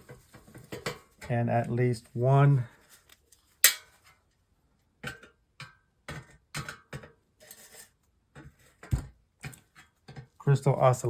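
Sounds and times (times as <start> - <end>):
sharp metallic click: 3.6 - 3.8
tool and parts clinking on metal: 3.6 - 3.8.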